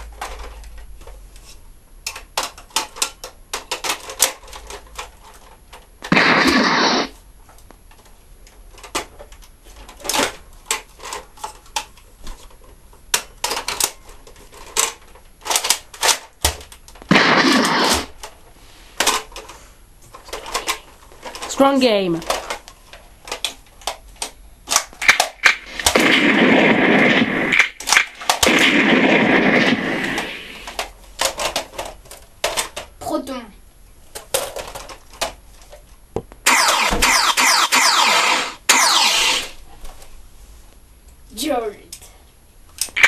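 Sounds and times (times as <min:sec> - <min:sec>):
plastic toy blaster clicks: 0:36.5 - 0:39.6.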